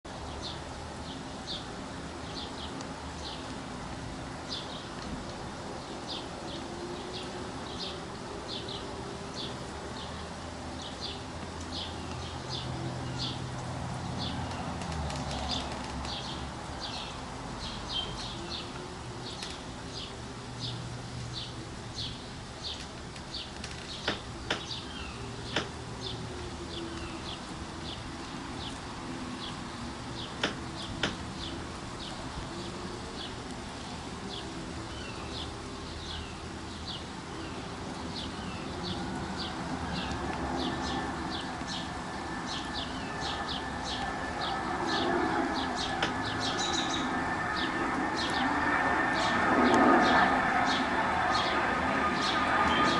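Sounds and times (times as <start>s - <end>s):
low steady hum: 15.4s - 52.9s.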